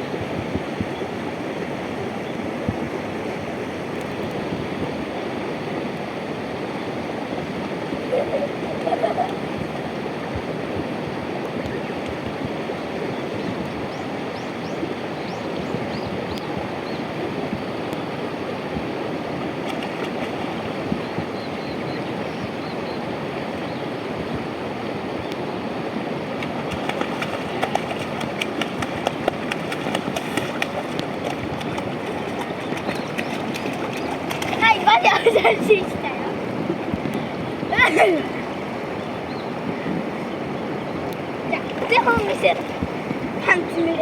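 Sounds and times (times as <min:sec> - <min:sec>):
river rushing over rocks: 0:24.0 - 0:44.0.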